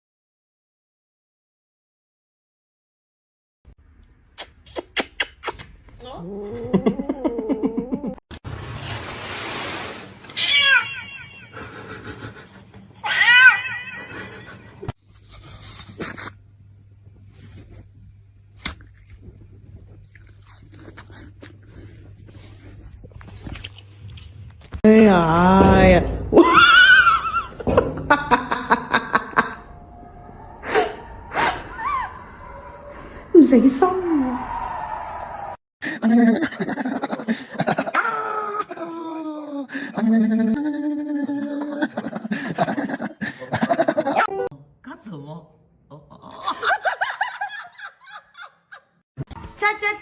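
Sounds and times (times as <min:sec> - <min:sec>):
person laughing: 0:06.6 - 0:08.2, 0:14.0 - 0:14.9, 0:26.3 - 0:29.8
cat meowing: 0:10.4 - 0:11.5, 0:13.0 - 0:14.1
high-pitched cry: 0:10.4 - 0:11.6, 0:13.0 - 0:14.6, 0:29.7 - 0:34.6.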